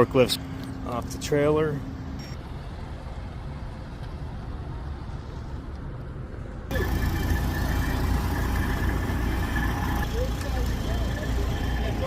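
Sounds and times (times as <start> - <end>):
heavy vehicle engine rumbling: 6.4 - 12.0
thin steady whine: 6.7 - 12.0.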